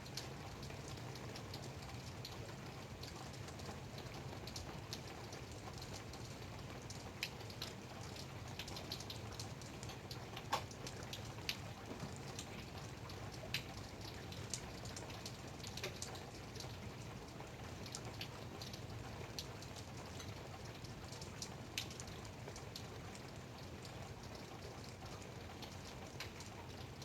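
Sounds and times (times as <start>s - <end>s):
light rain hiss: 0.0s - 27.0s
raindrops ticking: 0.0s - 27.0s.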